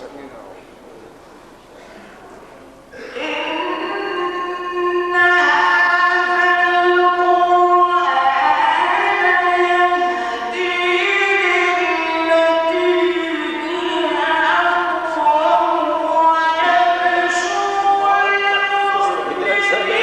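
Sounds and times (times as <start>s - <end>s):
man chanting melodically: 3.2s - 20.0s.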